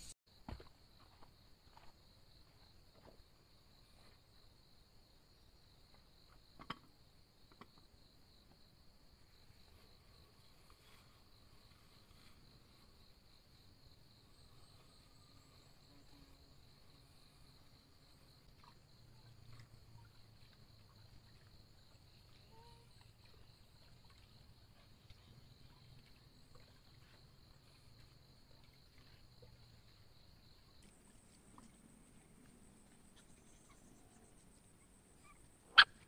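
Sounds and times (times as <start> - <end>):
insects chirring: 0.4 - 36.0.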